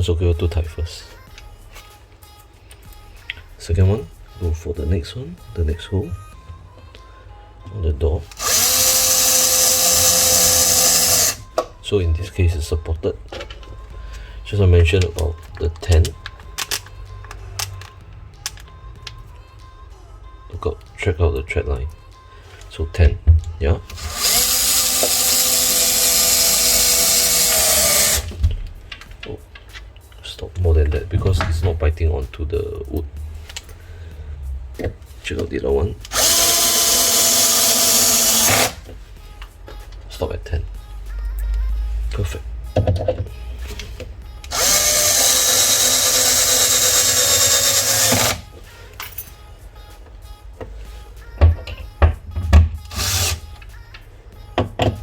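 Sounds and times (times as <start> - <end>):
cordless drill motor running: 8.3 - 11.4, 24.0 - 28.4, 36.1 - 38.8, 44.5 - 48.4, 52.9 - 53.4.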